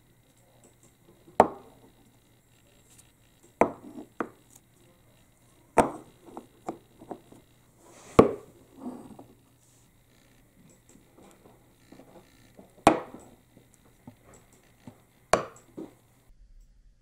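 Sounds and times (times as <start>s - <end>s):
wooden balls clacking: 1.0s - 2.0s, 3.5s - 4.6s, 5.7s - 7.4s, 10.8s - 16.0s.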